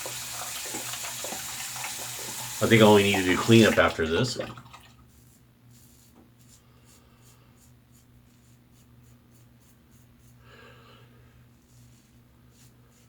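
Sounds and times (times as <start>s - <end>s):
razor scraping stubble: 11.6s - 13.0s.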